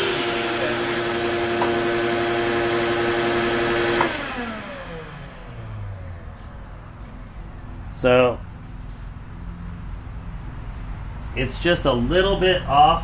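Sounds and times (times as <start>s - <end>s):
router spindle whining: 0.0s - 6.2s.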